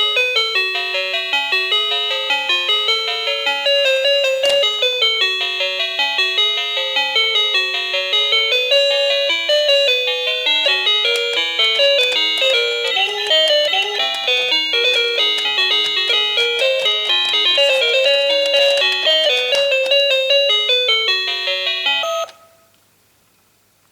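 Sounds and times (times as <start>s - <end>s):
toy telephone beeping tune: 3.6s - 5.0s, 8.2s - 22.6s.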